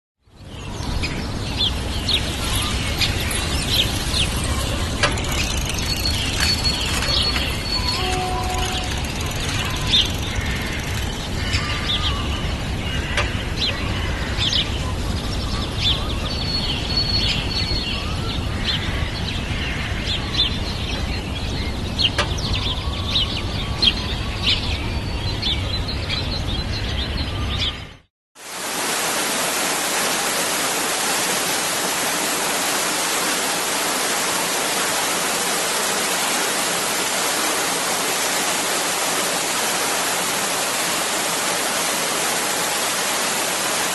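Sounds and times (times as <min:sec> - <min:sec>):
small birds chirping: 0:00.4 - 0:12.3
falling water rushing: 0:01.1 - 0:11.3, 0:28.4 - 0:43.9.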